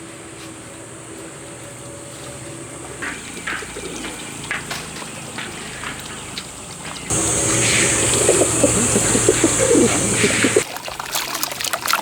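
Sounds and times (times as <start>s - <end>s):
birds calling: 0.8s - 10.6s
steady high hiss: 7.1s - 10.6s.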